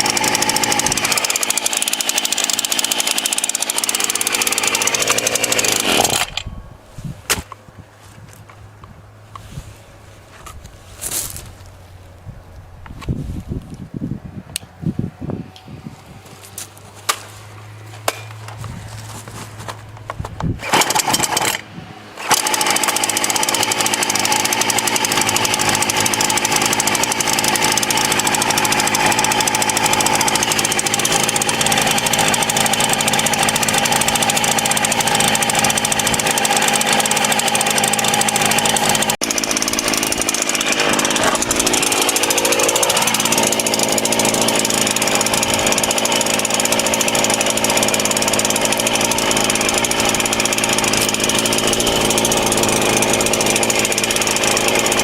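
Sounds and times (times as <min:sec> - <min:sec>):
chainsaw starting and revving: 0:00.0 - 0:06.5, 0:20.6 - 0:55.0.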